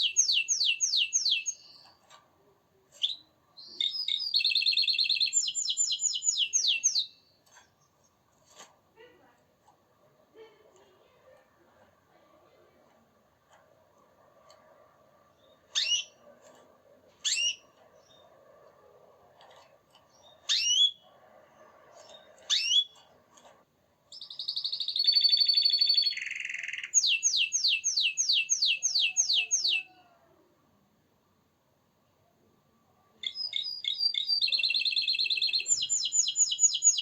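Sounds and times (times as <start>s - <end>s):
canary singing: 0.0s - 2.1s, 2.9s - 8.1s, 15.2s - 18.5s, 20.0s - 23.5s, 24.1s - 30.2s, 33.2s - 37.0s.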